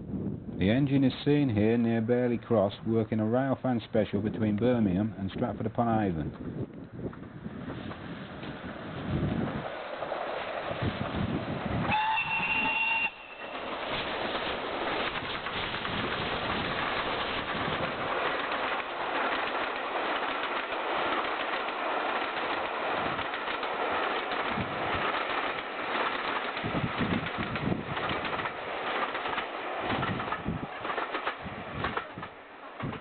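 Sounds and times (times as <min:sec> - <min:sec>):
rush of exhaust and train noise: 0:00.0 - 0:33.0
steam locomotive passing: 0:06.9 - 0:33.0.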